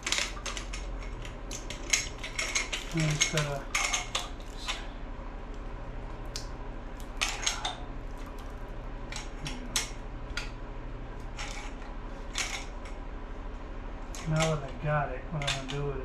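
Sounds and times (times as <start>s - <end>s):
steady low hum: 0.0s - 16.0s
hand tools clinking on metal: 1.9s - 4.8s.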